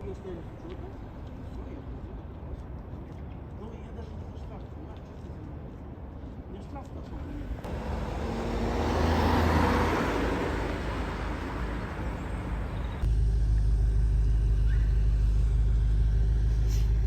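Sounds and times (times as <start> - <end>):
road noise: 5.5 - 13.3
car engine: 7.6 - 13.1.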